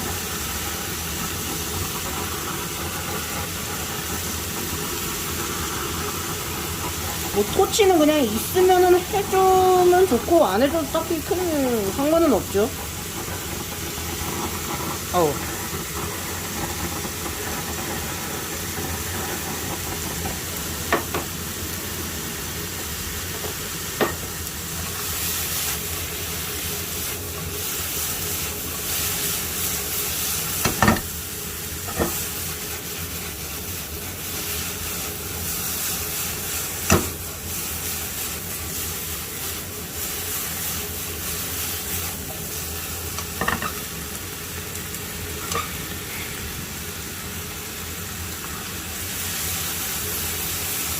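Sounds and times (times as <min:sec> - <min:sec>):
food sizzling in a pan: 0:00.0 - 0:50.9.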